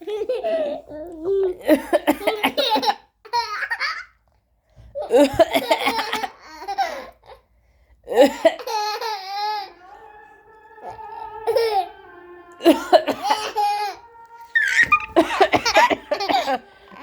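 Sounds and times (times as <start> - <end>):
laughter: 0.0 - 4.1, 5.0 - 7.2, 12.6 - 17.0.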